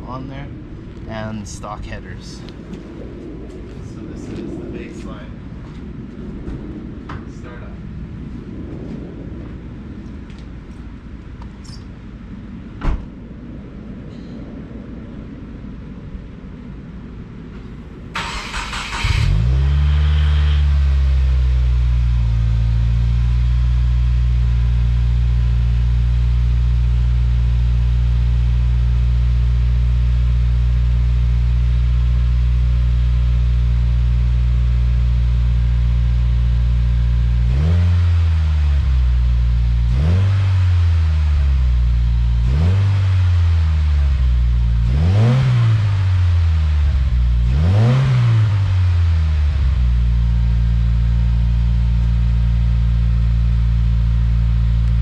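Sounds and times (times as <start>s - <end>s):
car engine starting and idling: 16.3s - 55.0s
engine revving: 18.2s - 27.6s, 35.6s - 50.7s.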